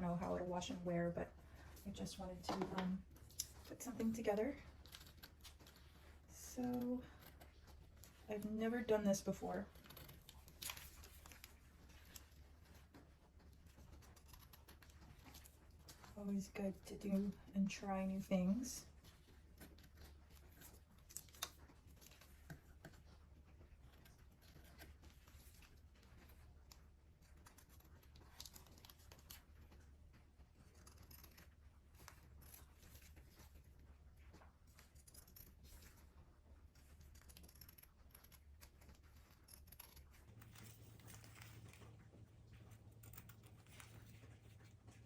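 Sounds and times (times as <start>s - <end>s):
low steady hum: 0.0s - 45.0s
scissors cutting fabric and tape: 2.0s - 12.4s, 36.7s - 41.8s.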